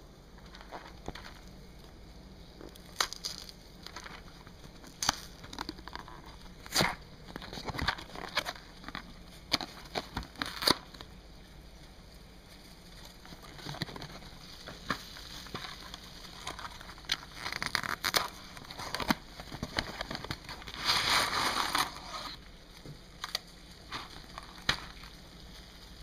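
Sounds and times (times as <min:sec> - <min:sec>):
cardboard and paper packaging tearing: 0:04.9 - 0:11.1, 0:13.3 - 0:22.4.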